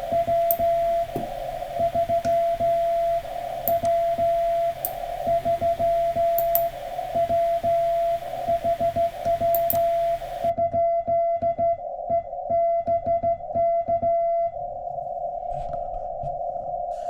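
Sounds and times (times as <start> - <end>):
morse code beeps: 0.0 - 10.5
radio hiss: 0.0 - 10.5.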